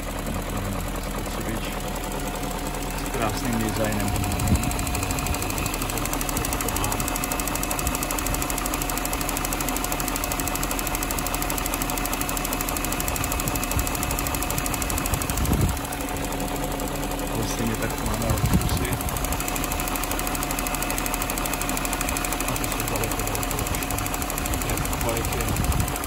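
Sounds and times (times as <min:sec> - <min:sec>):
car engine idling: 0:00.0 - 0:26.0.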